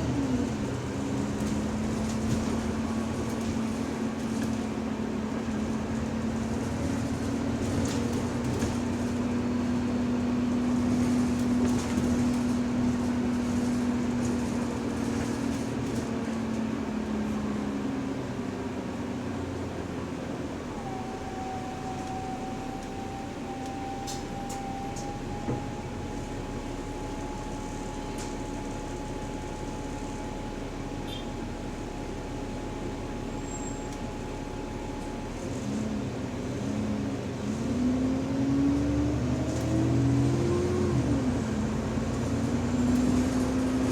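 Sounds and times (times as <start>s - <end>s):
bus engine: 0.0s - 43.9s
drivetrain whine: 0.0s - 43.9s
road noise: 0.0s - 43.9s.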